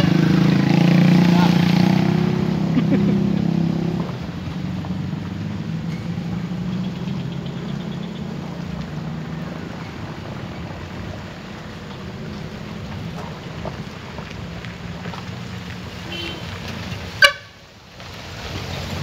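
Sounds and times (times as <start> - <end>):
vehicle engine humming: 0.0 - 19.0.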